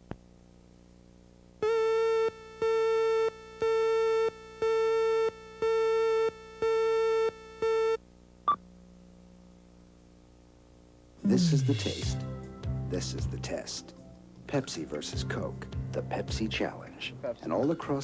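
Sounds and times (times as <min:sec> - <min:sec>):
buzzy electronic beeps: 0:01.6 - 0:08.6.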